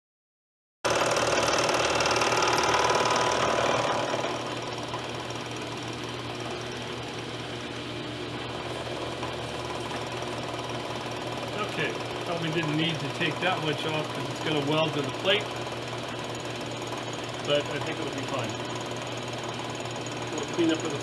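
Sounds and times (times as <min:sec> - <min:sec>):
machine tool cutting metal: 0:00.9 - 0:05.3.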